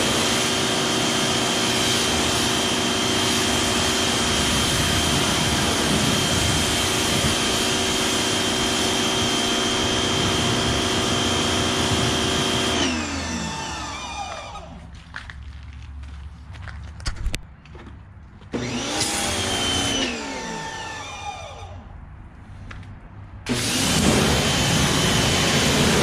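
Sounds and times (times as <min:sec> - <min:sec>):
electric pressure washer whining: 0:00.0 - 0:14.9, 0:18.5 - 0:21.8, 0:23.5 - 0:26.0.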